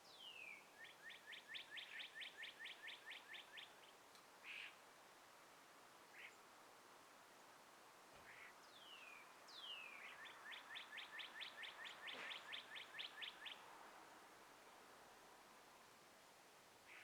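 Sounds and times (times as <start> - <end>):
faint background hiss: 0.0 - 17.0
songbird singing: 8.4 - 13.6.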